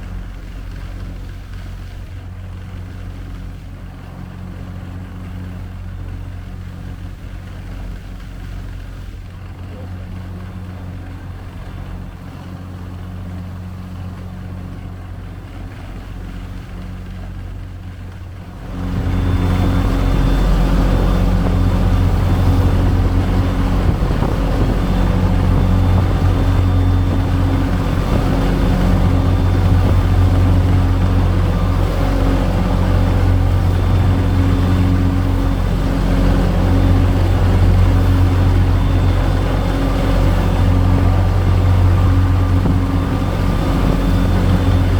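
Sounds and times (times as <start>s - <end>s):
boat engine humming: 0.0s - 44.9s
rush of noise: 18.6s - 44.9s.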